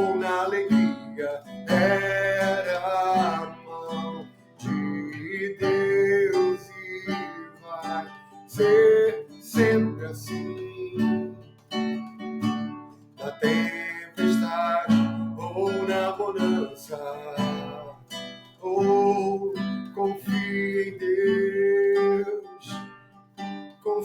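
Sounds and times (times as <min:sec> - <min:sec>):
person singing worship song: 0:00.0 - 0:11.4, 0:13.2 - 0:18.0
strummed acoustic guitar: 0:00.0 - 0:24.0.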